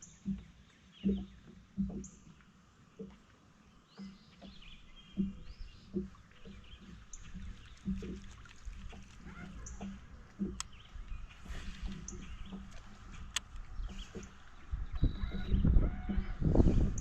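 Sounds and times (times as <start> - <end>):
low knocks: 4.4 - 17.0
birds chirping and calling: 9.0 - 16.5.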